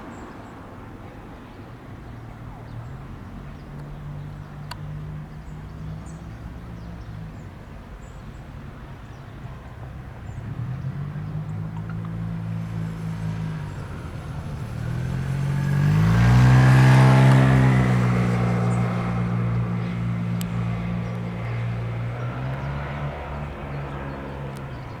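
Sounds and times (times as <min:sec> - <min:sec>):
engine passing by: 0:09.6 - 0:25.0.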